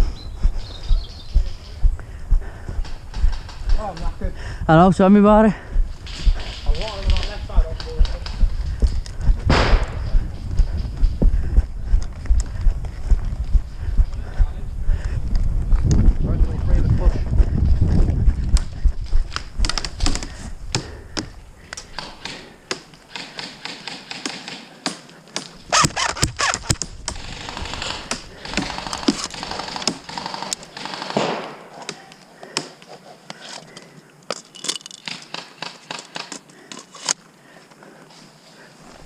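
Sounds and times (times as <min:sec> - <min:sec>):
airsoft guns firing: 0:09.5 - 0:10.0, 0:27.4 - 0:31.7.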